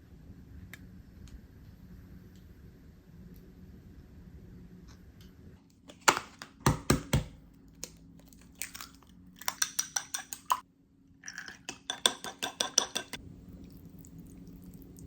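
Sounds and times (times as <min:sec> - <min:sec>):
sharp knocks on plastic: 0:06.1 - 0:07.4.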